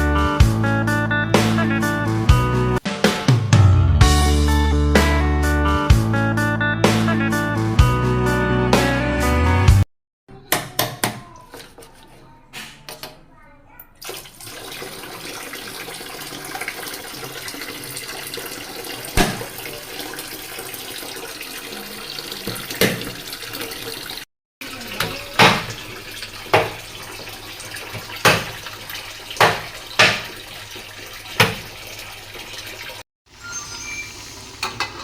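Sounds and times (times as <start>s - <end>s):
water running from a tap: 14.0s - 35.0s.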